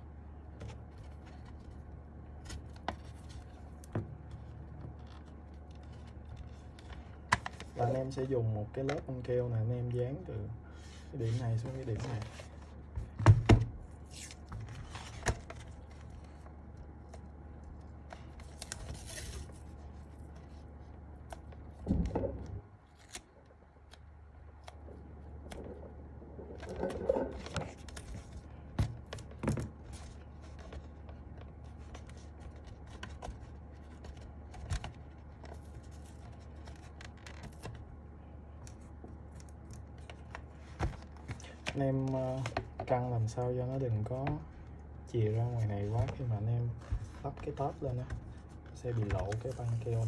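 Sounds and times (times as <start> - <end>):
adhesive tape ripping: 22.8 - 23.4.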